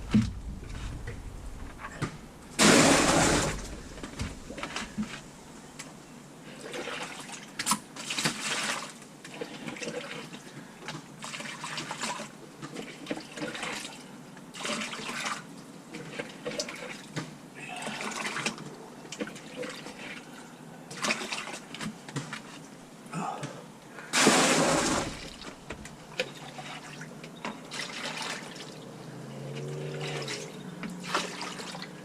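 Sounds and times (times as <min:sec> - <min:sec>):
water pouring into a bucket: 0:02.6 - 0:05.3, 0:06.5 - 0:10.5, 0:11.2 - 0:21.8, 0:24.1 - 0:25.6, 0:26.2 - 0:32.0.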